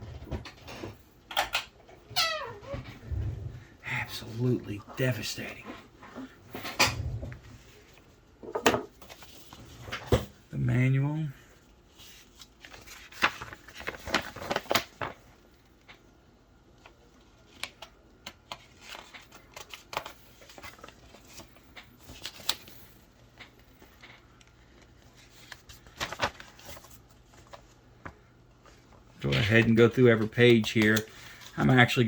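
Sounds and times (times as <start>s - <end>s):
paper pages rustling: 8.9s - 10.1s, 11.9s - 16.0s, 16.8s - 32.0s.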